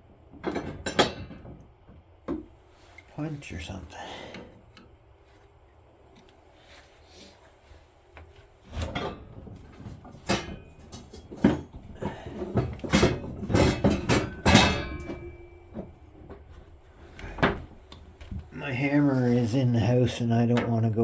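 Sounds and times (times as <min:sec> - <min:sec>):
metal tools clanking: 0:08.7 - 0:18.0.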